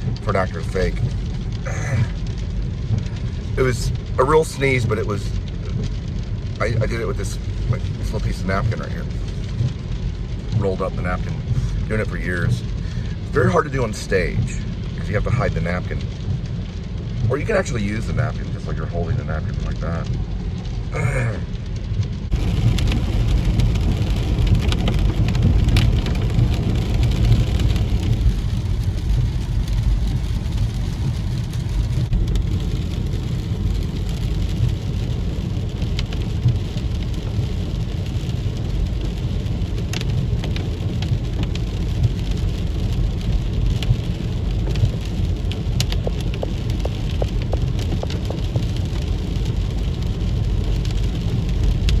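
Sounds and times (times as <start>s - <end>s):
road noise inside car: 0.0s - 52.0s.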